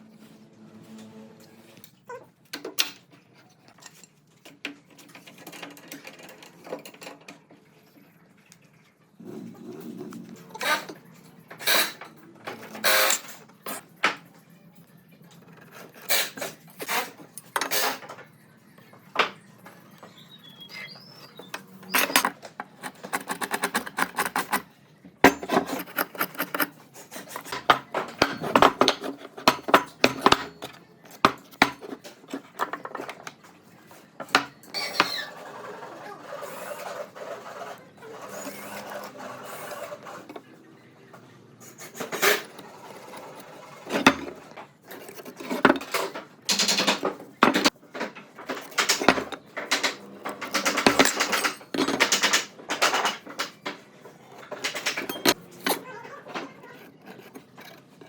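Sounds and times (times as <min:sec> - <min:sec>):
wooden pieces knocking and clattering: 0:21.4 - 0:33.5, 0:43.2 - 0:58.0
rapid clicks and knocks: 0:43.1 - 0:56.5.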